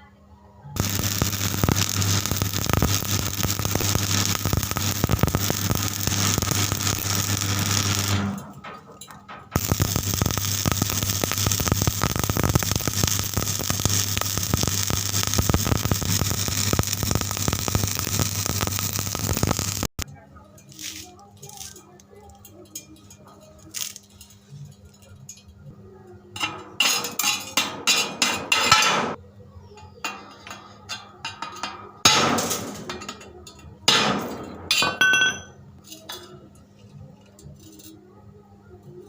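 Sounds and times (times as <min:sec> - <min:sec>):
welding arc crackling: 0:00.8 - 0:08.6, 0:09.5 - 0:20.0
welding machine hum: 0:00.8 - 0:08.7, 0:09.6 - 0:20.0.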